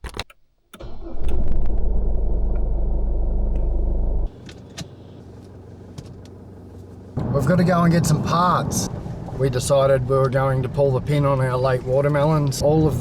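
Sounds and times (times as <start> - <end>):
road noise: 0.8 - 13.0
vehicle engine rumble: 0.8 - 13.0.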